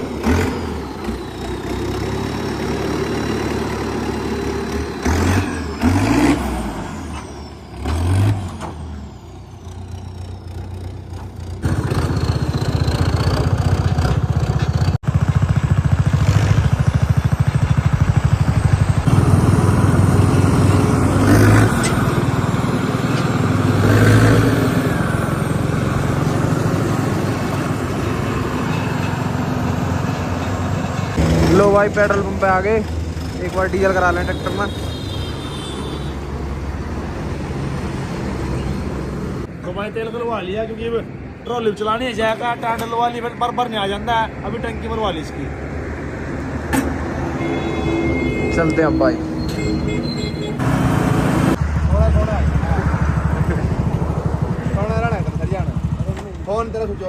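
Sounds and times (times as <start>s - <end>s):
diesel tractor engine running: 0.0s - 34.4s, 49.6s - 57.0s.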